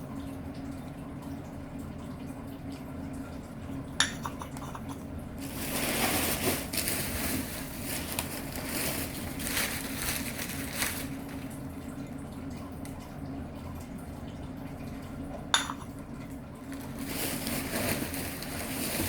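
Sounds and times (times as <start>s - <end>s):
paper and plastic crinkling: 5.4s - 11.6s, 16.6s - 19.0s.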